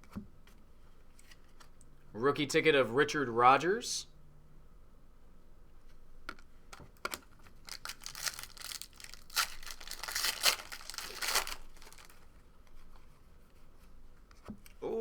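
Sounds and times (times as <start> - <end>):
cards clicking and rustling: 6.3 - 12.2
foil wrapper crinkling and tearing: 6.7 - 12.3.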